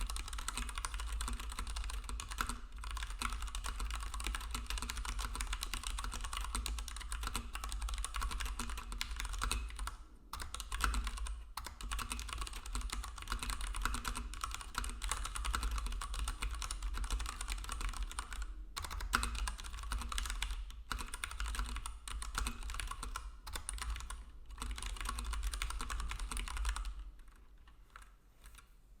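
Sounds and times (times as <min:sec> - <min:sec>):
typing on mechanical keyboard: 0:00.0 - 0:28.7.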